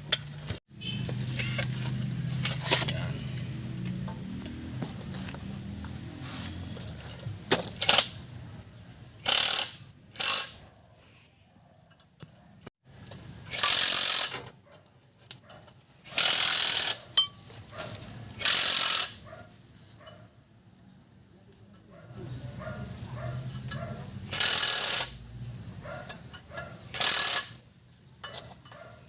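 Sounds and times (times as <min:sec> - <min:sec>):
ratchet wrench clicking: 0:07.8 - 0:08.1, 0:09.2 - 0:10.6, 0:13.5 - 0:14.4, 0:16.1 - 0:17.4, 0:18.3 - 0:19.2, 0:23.7 - 0:25.2, 0:26.3 - 0:27.6.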